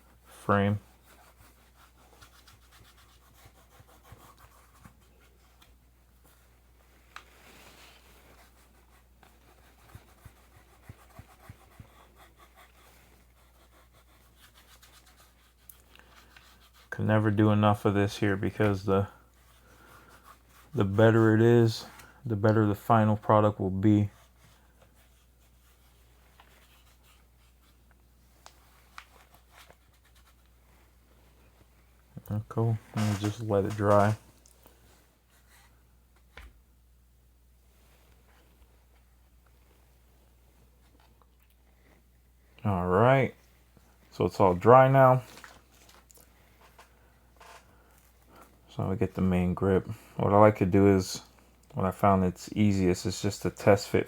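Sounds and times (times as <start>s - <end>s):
wipe rubbing on plastic: 0.0s - 21.9s, 32.3s - 34.3s.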